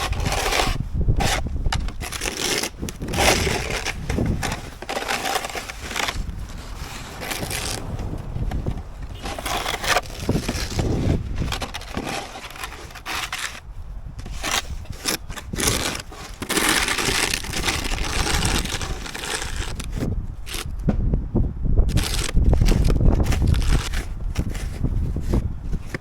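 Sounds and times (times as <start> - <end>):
snow shovel scraping snow: 0.0 - 8.6, 9.2 - 13.6, 14.3 - 19.9.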